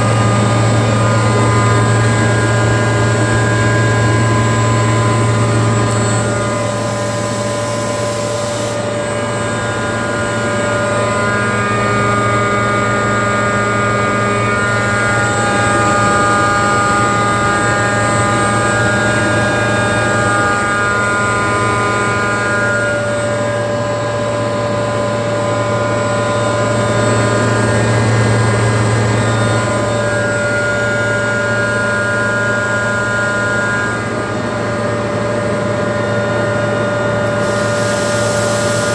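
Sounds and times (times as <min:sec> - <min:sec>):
air compressor humming and whining: 0:00.0 - 0:38.9
brief air hiss: 0:37.3 - 0:38.9.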